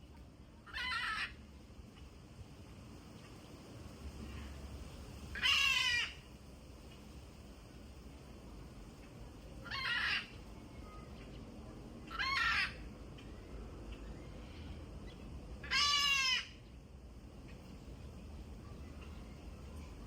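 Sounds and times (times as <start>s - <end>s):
macaw squawking: 0.7s - 1.3s, 12.1s - 12.8s, 15.6s - 16.5s.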